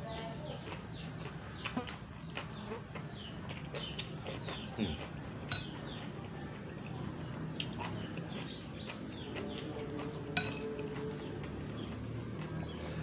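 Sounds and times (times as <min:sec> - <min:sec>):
birds chirping: 0:00.0 - 0:13.0
spoon clinking on plate: 0:05.5 - 0:05.8, 0:10.4 - 0:10.8.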